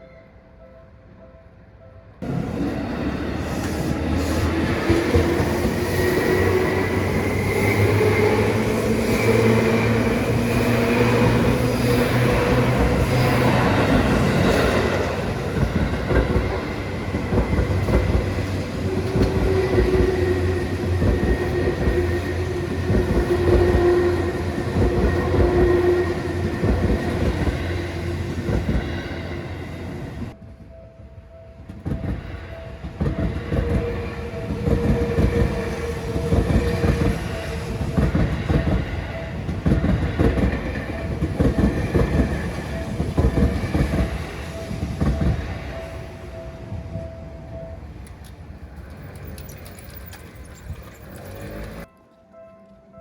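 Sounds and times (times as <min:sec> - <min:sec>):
crossing warning bell ringing: 0:02.2 - 0:51.9
train wheels clattering: 0:32.8 - 0:45.7, 0:48.1 - 0:51.9.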